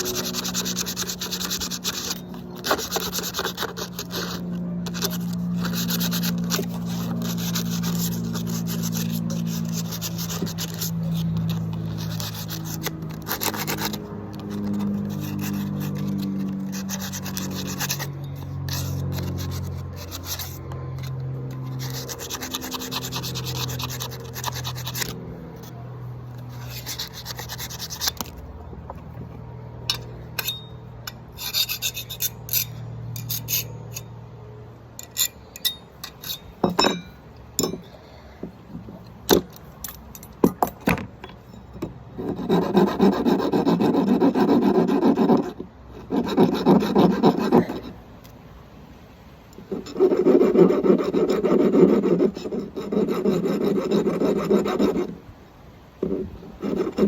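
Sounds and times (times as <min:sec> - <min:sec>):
file rasping on steel: 0:00.0 - 0:28.9, 0:29.9 - 0:34.1, 0:42.2 - 0:48.0, 0:49.6 - 0:55.2, 0:56.0 - 0:57.0
scraping strokes on steel: 0:00.0 - 0:34.4, 0:35.0 - 0:38.2, 0:49.5 - 0:55.2, 0:56.0 - 0:57.0
metal taps and clinks: 0:35.6 - 0:38.0, 0:38.8 - 0:42.0.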